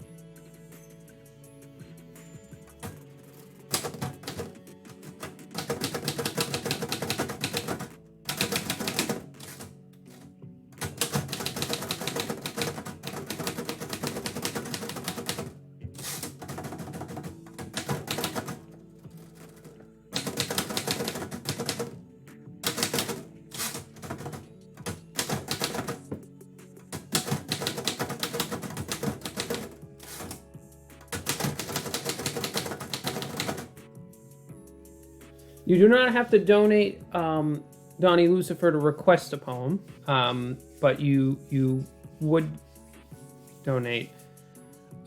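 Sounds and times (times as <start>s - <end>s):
background music: 0.0s - 45.0s
typewriter keys clacking: 2.8s - 22.0s, 22.6s - 26.2s, 26.9s - 30.4s, 31.0s - 33.7s.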